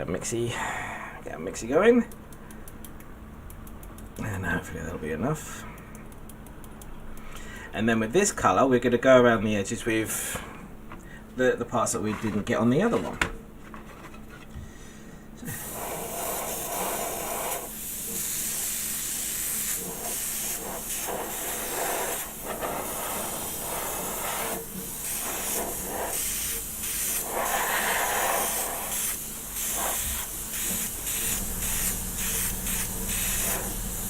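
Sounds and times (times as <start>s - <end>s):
airbrush spraying hiss: 15.5s - 34.0s.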